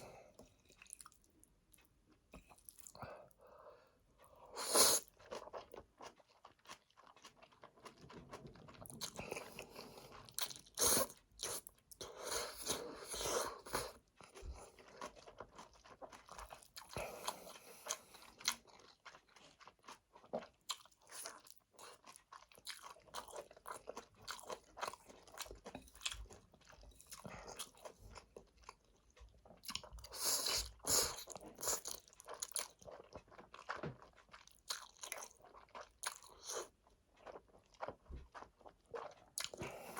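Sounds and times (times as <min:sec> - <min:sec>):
person chewing noodles: 0:00.0 - 0:39.9.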